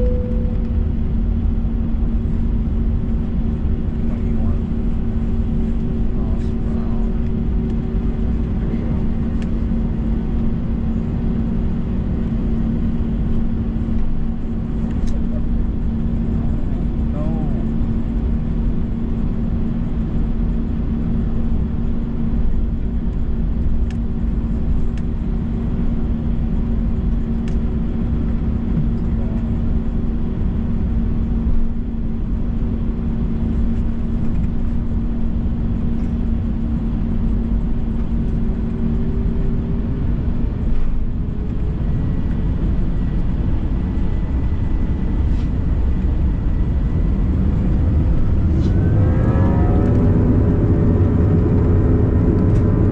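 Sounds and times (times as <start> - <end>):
steady hum: 0.0 - 52.9
jet engines rumbling: 21.4 - 52.9
jet engines whining: 38.7 - 52.9.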